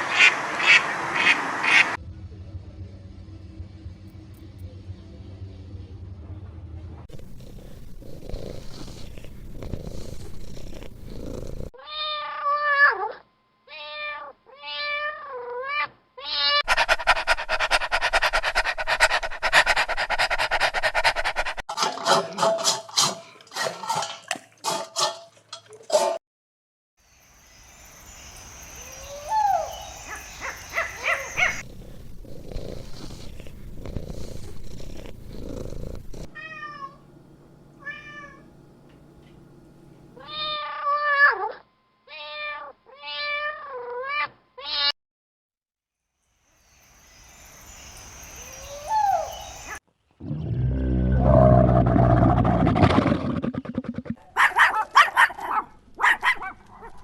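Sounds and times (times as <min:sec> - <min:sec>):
cat meowing: 0:11.8 - 0:16.6, 0:37.8 - 0:38.4, 0:40.2 - 0:45.0.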